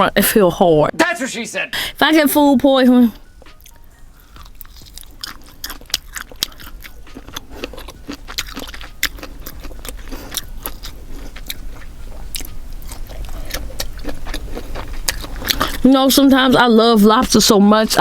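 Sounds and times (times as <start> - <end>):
person chewing crunchy food: 3.4 - 16.7.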